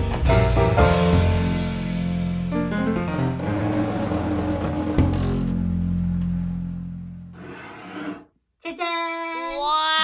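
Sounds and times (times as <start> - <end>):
instrumental background music: 0.0 - 7.4.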